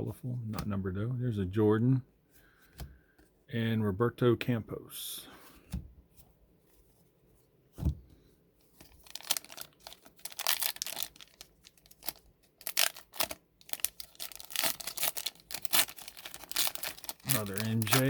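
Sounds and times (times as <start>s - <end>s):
thump: 7.8s - 8.1s
wrapper torn and crinkled: 8.9s - 18.0s.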